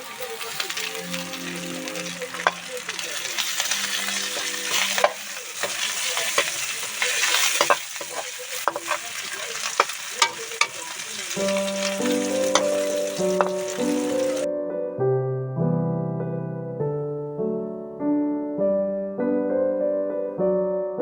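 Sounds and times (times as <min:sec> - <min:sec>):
food sizzling in oil: 0:00.0 - 0:14.5
piano music: 0:00.0 - 0:21.0.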